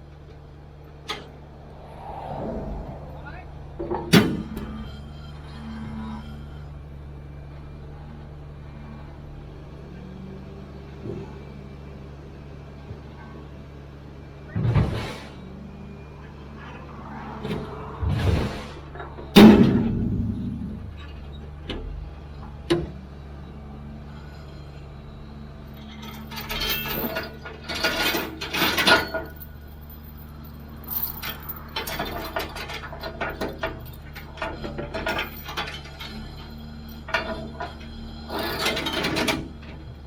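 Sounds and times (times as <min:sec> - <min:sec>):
heavy bang: 0:01.1 - 0:05.4
metal clanks and rattles: 0:25.6 - 0:40.0.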